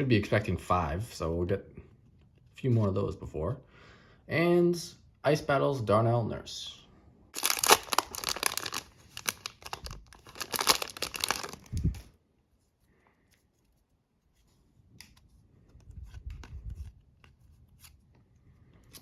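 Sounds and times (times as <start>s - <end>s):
wrapper tearing and crinkling: 7.4s - 12.1s.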